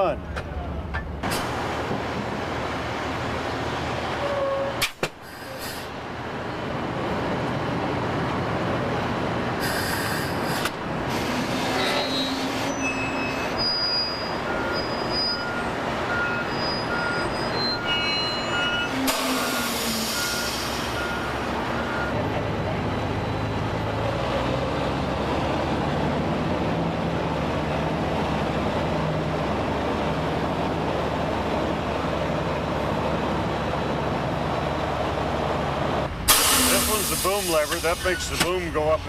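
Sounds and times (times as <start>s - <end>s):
backup alarm beeping: 13.7s - 22.2s.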